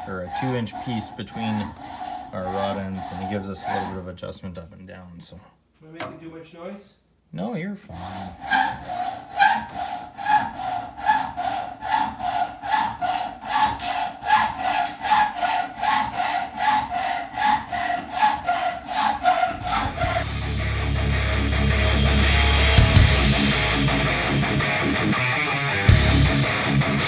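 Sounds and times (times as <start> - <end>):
hacksaw cutting metal: 0.0 - 4.0, 7.9 - 20.4
music with heavy bass: 20.0 - 27.0.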